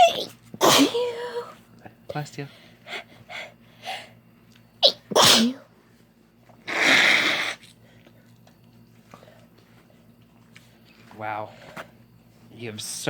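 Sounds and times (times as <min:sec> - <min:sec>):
woman sneezing: 0:00.0 - 0:01.5, 0:04.8 - 0:05.7, 0:06.7 - 0:07.6.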